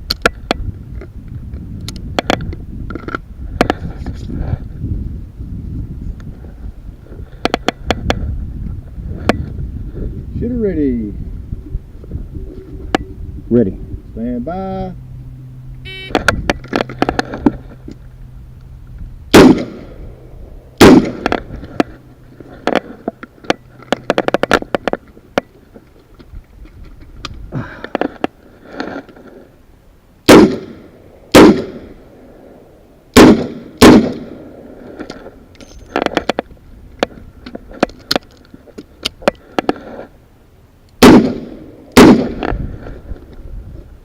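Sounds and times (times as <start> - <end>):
revolver shots: 19.3 - 20.1, 20.8 - 21.8, 30.3 - 32.0, 33.1 - 34.4.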